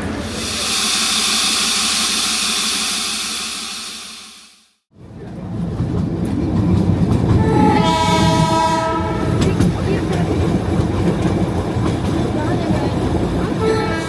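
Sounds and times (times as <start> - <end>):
train horn: 7.4 - 9.4, 13.6 - 14.0.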